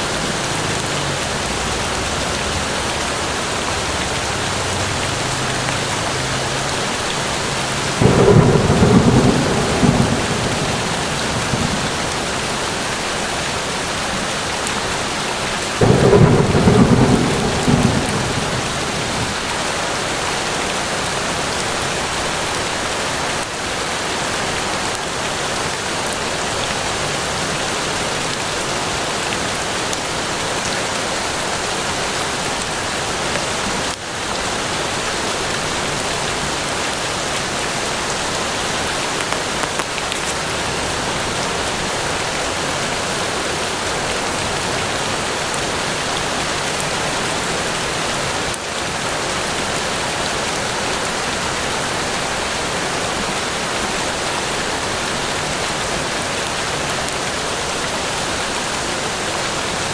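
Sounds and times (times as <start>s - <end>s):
heavy rain in a forest: 0.0s - 59.9s.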